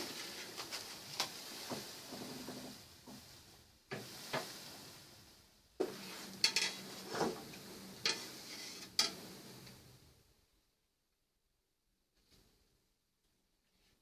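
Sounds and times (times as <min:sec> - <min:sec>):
metal utensil clinking on pot: 0:06.4 - 0:06.8.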